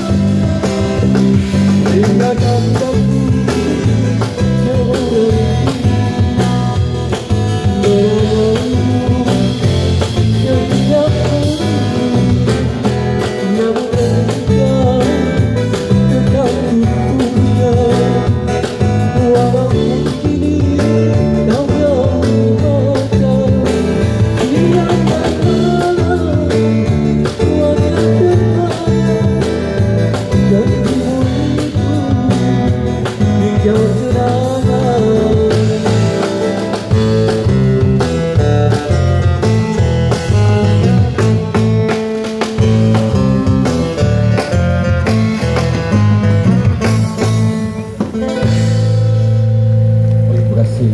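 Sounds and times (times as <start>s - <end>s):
person singing: 0.0s - 37.6s
strummed guitar: 0.0s - 50.9s.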